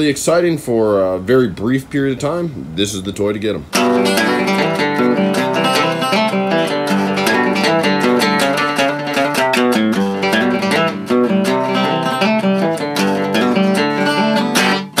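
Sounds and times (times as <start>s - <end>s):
plucked acoustic guitar: 3.7s - 15.0s.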